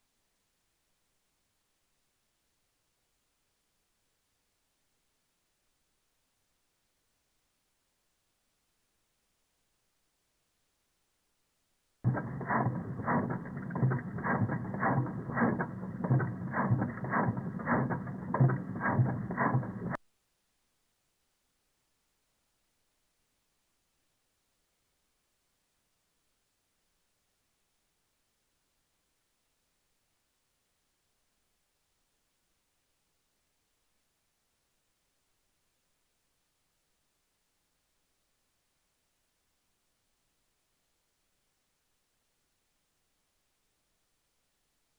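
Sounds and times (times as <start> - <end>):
muffled engine knocking: 12.1 - 20.0.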